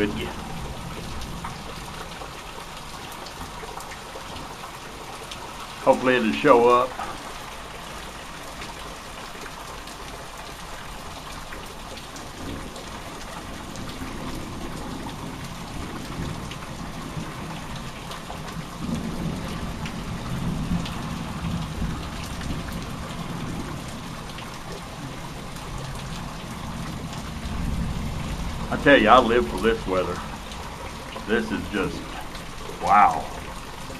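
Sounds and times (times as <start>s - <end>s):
steady rain pattering: 0.0s - 33.9s
low rumble of thunder: 18.8s - 24.2s, 26.6s - 29.5s.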